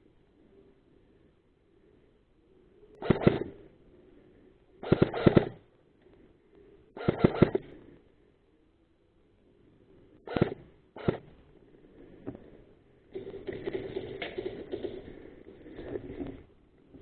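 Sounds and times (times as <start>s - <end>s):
airsoft gun bursts: 3.0s - 3.6s, 4.8s - 5.6s, 6.9s - 7.7s, 10.2s - 11.4s.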